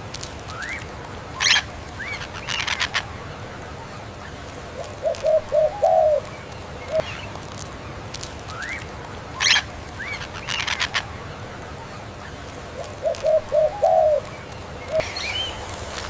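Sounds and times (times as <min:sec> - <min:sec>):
dove cooing: 0:04.7 - 0:06.3, 0:12.7 - 0:16.0
small birds chirping and whistling: 0:04.8 - 0:07.4, 0:12.8 - 0:16.0.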